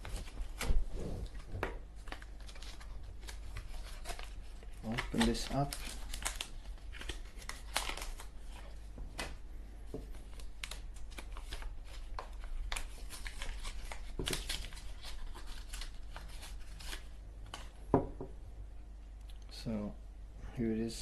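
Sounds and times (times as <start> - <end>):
package rustling and tearing: 0.0 - 9.3, 10.2 - 17.7
low steady hum: 0.0 - 21.0.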